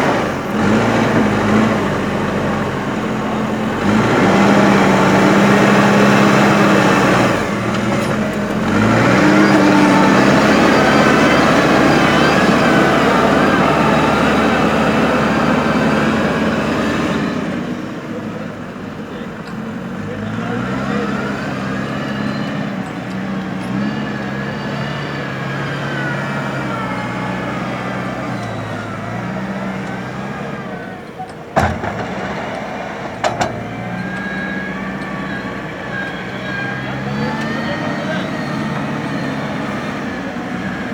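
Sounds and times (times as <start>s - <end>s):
backhoe diesel engine running hard: 0.0s - 40.9s
sharp knocks: 31.6s - 34.2s.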